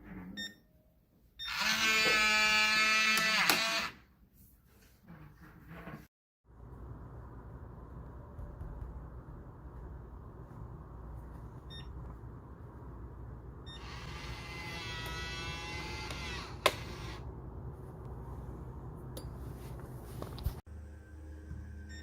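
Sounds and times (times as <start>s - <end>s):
lock motor whirring: 13.8s - 17.2s.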